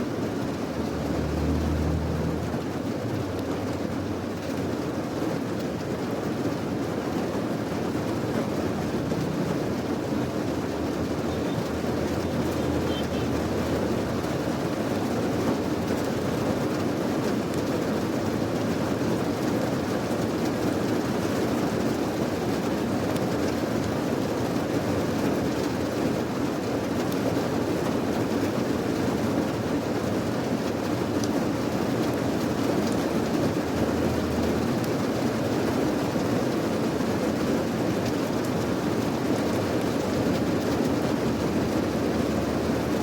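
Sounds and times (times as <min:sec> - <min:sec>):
steady rain: 0:00.0 - 0:43.0.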